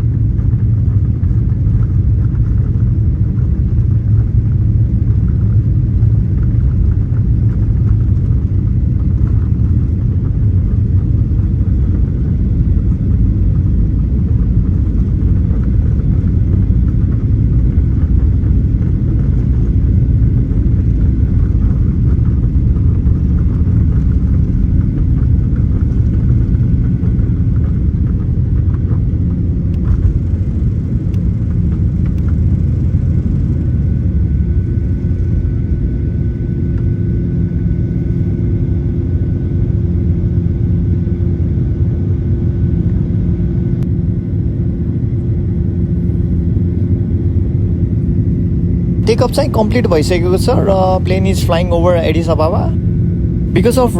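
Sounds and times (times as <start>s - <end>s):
jet engines rumbling in cabin: 0.0s - 53.9s.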